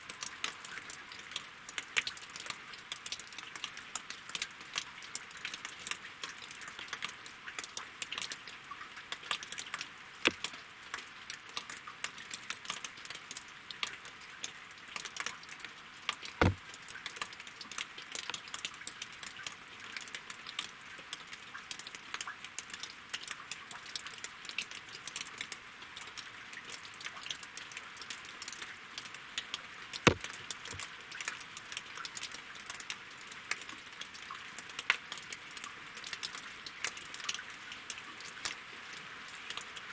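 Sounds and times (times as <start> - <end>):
rain falling on water: 0.0 - 39.9
heavy raindrops landing: 10.3 - 10.6, 16.1 - 17.2, 29.4 - 31.3.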